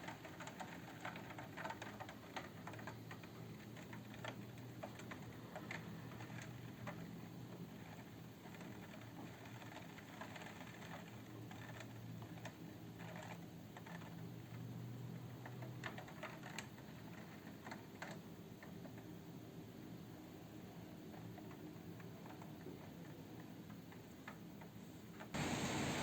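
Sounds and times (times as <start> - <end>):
low steady hum: 25.4 - 26.0
raindrops tapping on window: 25.4 - 26.0.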